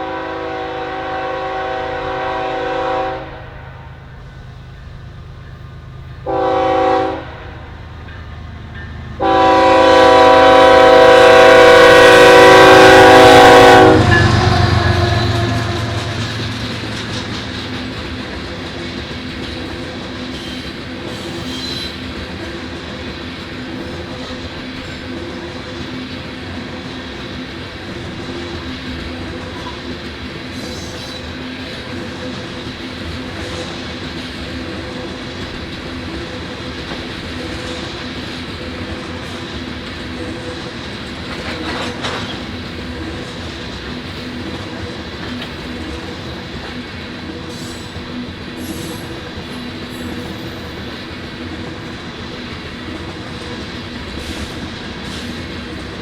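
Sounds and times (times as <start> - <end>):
train cars clickety-clack: 0.0 - 3.5, 4.1 - 56.0
locomotive air horn: 0.0 - 3.9, 6.2 - 7.8, 9.2 - 16.4
diesel locomotive engine passing: 0.0 - 56.0.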